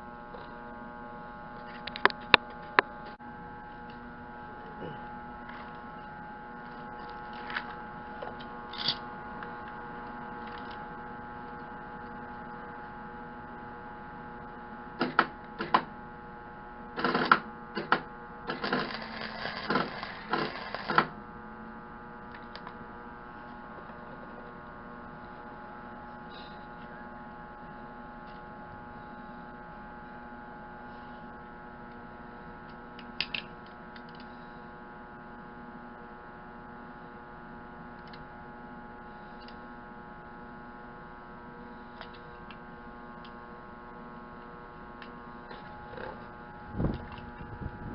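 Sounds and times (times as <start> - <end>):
steady electrical hum: 0.0 - 47.9
crackling weld: 17.0 - 21.2
wire-feed welder arc strikes: 17.0 - 21.2.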